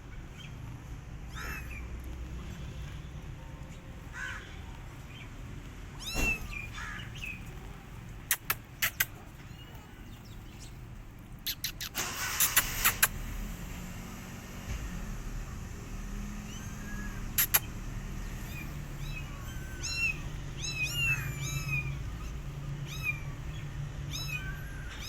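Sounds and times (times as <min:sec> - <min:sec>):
kittens meowing: 0:06.0 - 0:10.6, 0:16.3 - 0:25.0
sharp clicks: 0:08.1 - 0:09.2, 0:11.4 - 0:13.2, 0:17.3 - 0:17.7
steady low rumble: 0:14.7 - 0:25.0.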